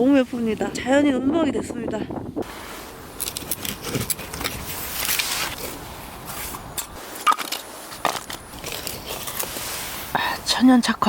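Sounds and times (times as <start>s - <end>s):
scraping and rustling: 2.7s - 10.1s.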